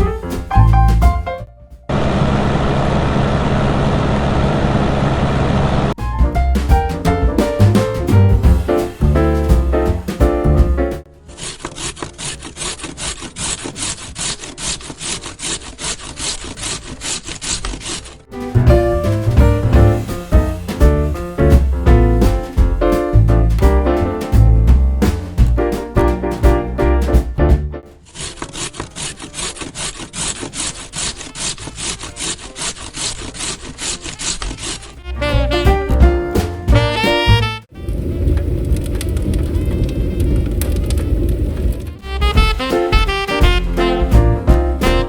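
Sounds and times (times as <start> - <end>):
hand saw cutting wood: 11.3 - 18.2, 28.0 - 35.2
short music: 18.3 - 24.9, 35.0 - 37.7, 42.0 - 45.0.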